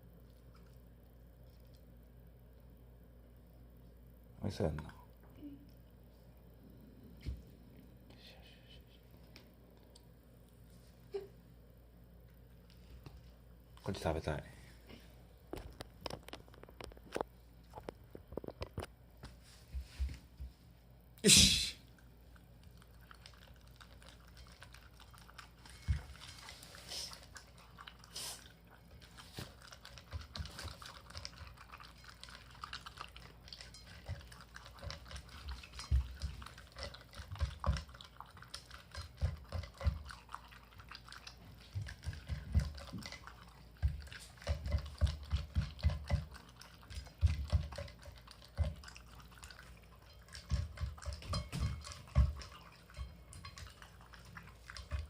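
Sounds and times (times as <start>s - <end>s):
dog chewing and crunching food: 0.0s - 4.0s, 15.4s - 19.0s, 21.9s - 55.0s.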